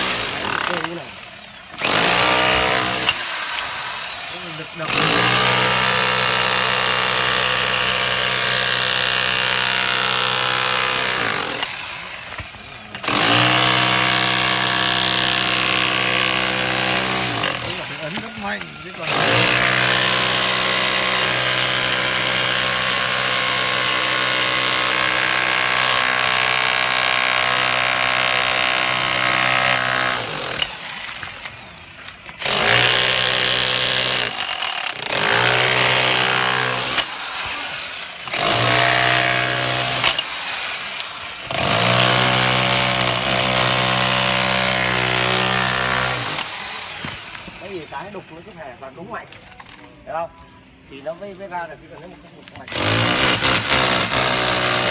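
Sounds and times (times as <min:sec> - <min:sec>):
rotary hammer chiselling wall: 0:01.7 - 0:30.8.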